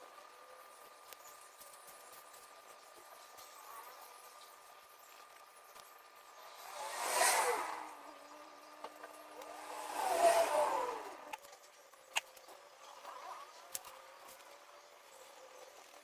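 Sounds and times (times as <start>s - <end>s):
vehicles passing by: 6.2s - 11.4s.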